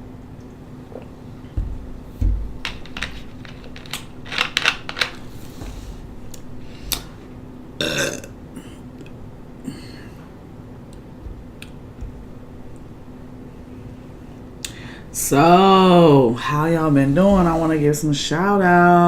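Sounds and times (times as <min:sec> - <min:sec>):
low thumps: 0:01.5 - 0:02.7, 0:11.2 - 0:13.2
person burping: 0:07.8 - 0:08.8, 0:09.6 - 0:10.2.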